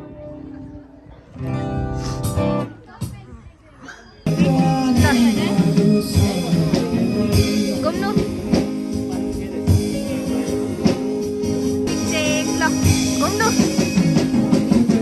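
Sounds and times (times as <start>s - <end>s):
guitar: 0.0s - 3.3s, 4.2s - 15.0s
person singing: 4.3s - 8.3s
drum beat: 4.3s - 15.0s.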